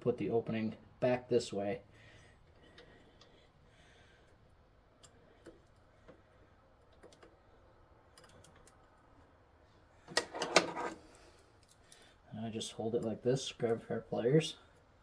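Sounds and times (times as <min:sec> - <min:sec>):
small metal parts clicking: 0:08.1 - 0:09.0.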